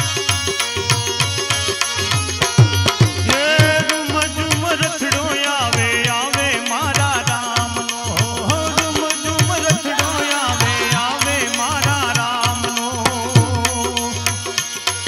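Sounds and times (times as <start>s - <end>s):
hand drum beat: 0.8s - 5.2s.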